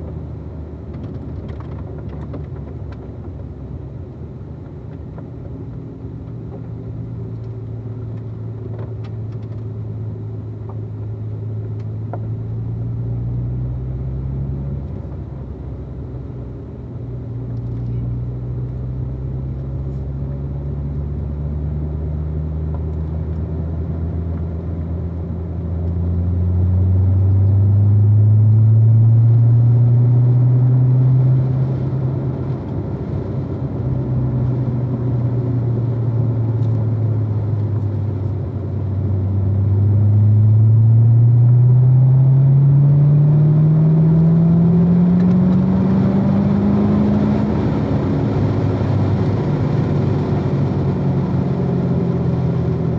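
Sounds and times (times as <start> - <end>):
sports car engine revving: 39.1 - 52.9.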